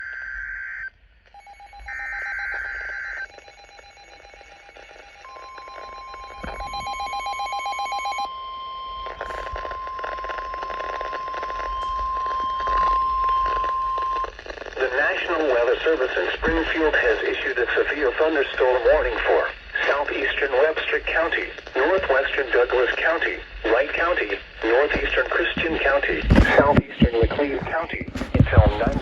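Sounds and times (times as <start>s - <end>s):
steady alarm tone: 0.0s - 27.1s
rapid electronic beeping: 9.0s - 29.0s.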